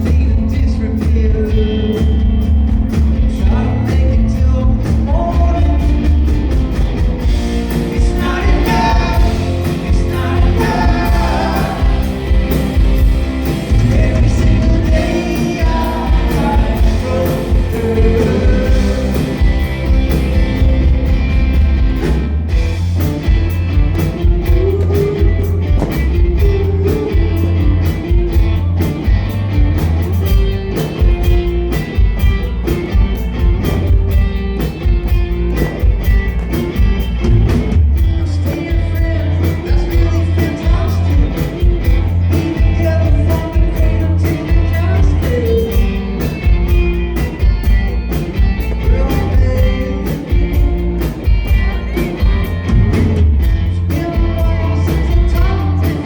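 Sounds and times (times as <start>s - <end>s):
live rock band playing: 0.0s - 56.0s
person singing: 7.8s - 13.0s, 13.6s - 20.7s, 24.3s - 28.2s, 38.0s - 46.4s, 47.2s - 56.0s.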